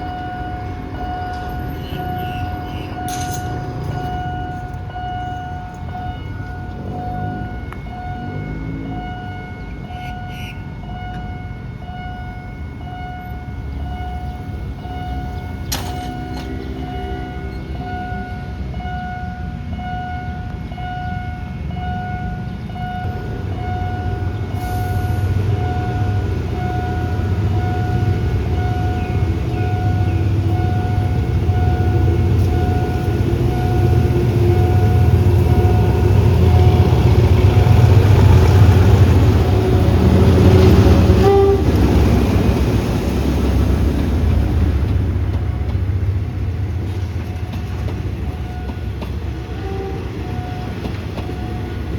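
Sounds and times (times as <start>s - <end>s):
level crossing warning signal: 0.0s - 51.9s
train rumble: 0.0s - 51.9s
train horn: 16.1s - 18.8s, 23.1s - 42.6s, 49.4s - 50.9s.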